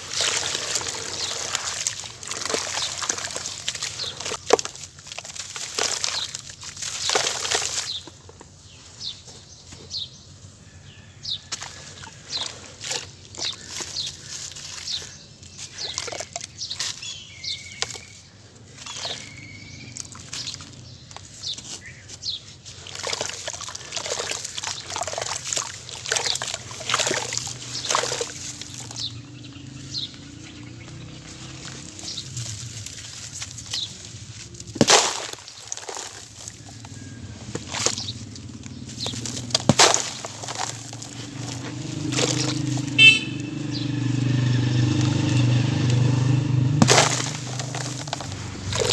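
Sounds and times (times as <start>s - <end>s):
water sloshing: 0.0s - 8.4s, 11.5s - 48.9s
chunks crushed by hand: 34.6s - 38.2s, 38.9s - 43.0s, 44.5s - 48.9s.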